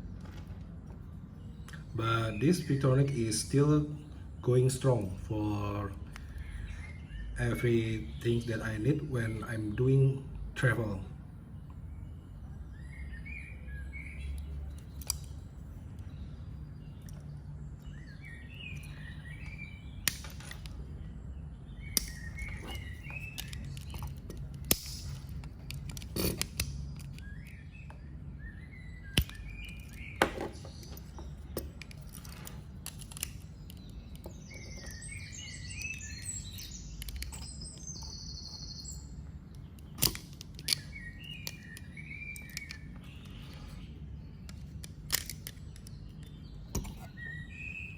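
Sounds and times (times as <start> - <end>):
birds chirping: 0.0 - 47.9
low steady hum: 0.0 - 47.9
multi-tool blades snapping shut: 19.4 - 20.8, 21.9 - 27.3, 29.2 - 35.0, 39.8 - 41.8.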